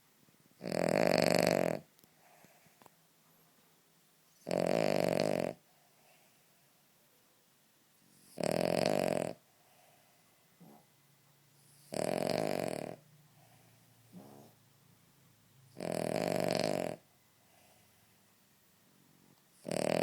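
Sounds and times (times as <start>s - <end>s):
dog snoring: 0.6s - 1.9s, 4.4s - 5.7s, 8.1s - 9.9s, 11.6s - 14.6s, 15.7s - 17.7s, 19.5s - 20.0s
faint breaths: 2.0s - 3.7s, 5.6s - 7.0s, 9.4s - 11.9s, 13.0s - 14.7s, 17.3s - 19.6s.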